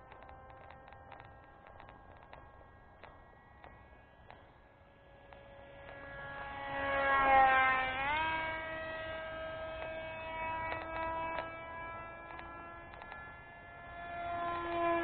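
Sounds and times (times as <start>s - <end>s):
faint clicks: 0.0s - 4.6s, 10.6s - 11.5s, 12.3s - 13.3s
model airplane motor whining: 0.0s - 15.0s.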